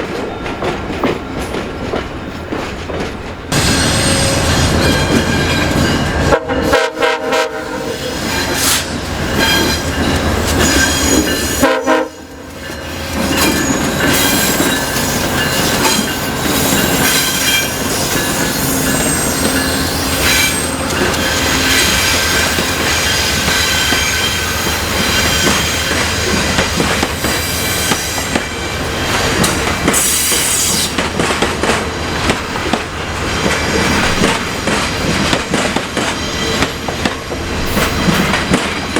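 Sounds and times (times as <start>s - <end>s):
train horn blasts: 3.5s - 9.9s, 10.6s - 15.2s, 16.6s - 25.9s
train wheels squealing: 3.6s - 6.2s, 7.9s - 11.6s, 12.7s - 31.0s, 36.0s - 36.9s
train wheels clacking over rail joints: 8.0s - 38.9s.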